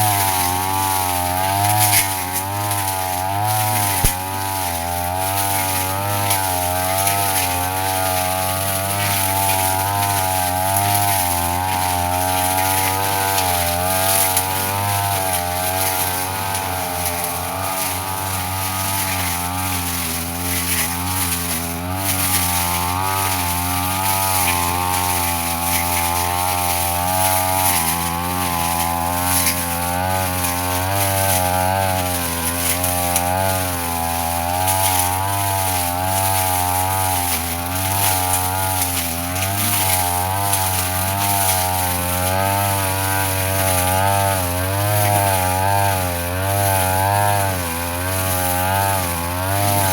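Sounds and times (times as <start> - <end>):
brush cutter engine cutting grass: 0.0 - 49.9.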